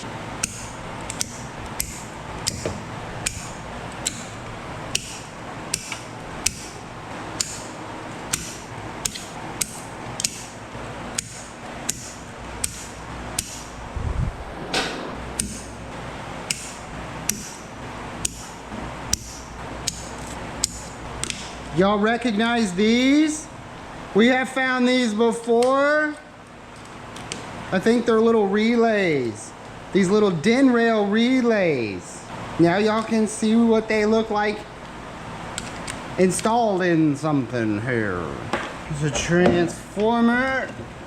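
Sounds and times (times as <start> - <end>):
wire cutters snipping: 0.0 - 13.8, 15.3 - 21.7
heavy clunk: 14.6 - 15.6.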